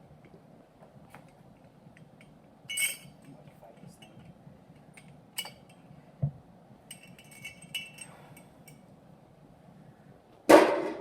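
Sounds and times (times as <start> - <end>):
light metallic clinks: 1.6 - 6.0, 6.8 - 8.9.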